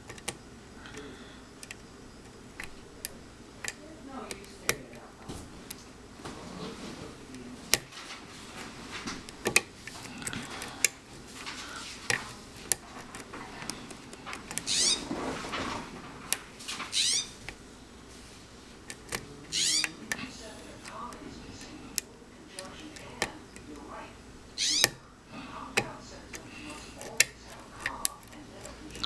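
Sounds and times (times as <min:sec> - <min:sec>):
lock pick clicks: 0:00.0 - 0:01.0, 0:01.6 - 0:05.0, 0:07.7 - 0:07.9, 0:09.2 - 0:11.0
pick scraping across pins: 0:00.0 - 0:24.0.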